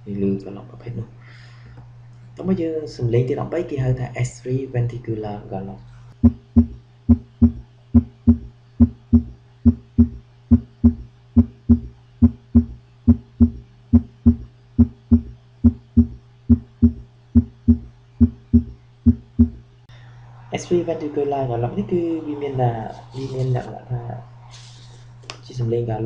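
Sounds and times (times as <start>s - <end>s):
steady low hum: 0.0s - 26.0s
heartbeat galloping thumps: 6.2s - 19.6s.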